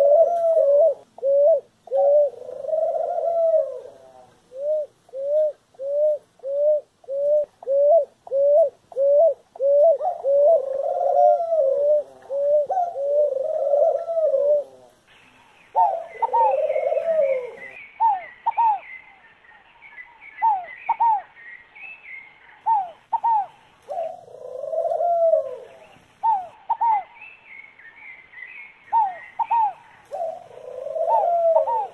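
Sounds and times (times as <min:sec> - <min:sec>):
warbling dove coos: 0:00.0 - 0:15.0, 0:15.8 - 0:18.8, 0:22.6 - 0:27.1, 0:28.9 - 0:31.9
doves cooing: 0:00.0 - 0:18.9, 0:22.5 - 0:27.1, 0:28.9 - 0:31.9.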